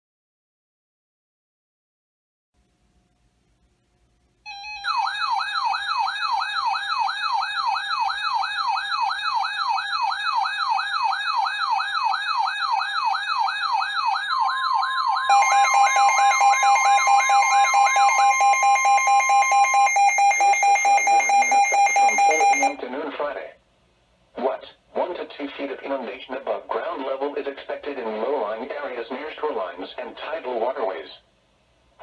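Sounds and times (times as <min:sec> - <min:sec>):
electronic wailing siren: 0:04.5 - 0:22.8
steady alarm tone: 0:04.5 - 0:22.8
rapid pulsing alarm beep: 0:13.5 - 0:22.8.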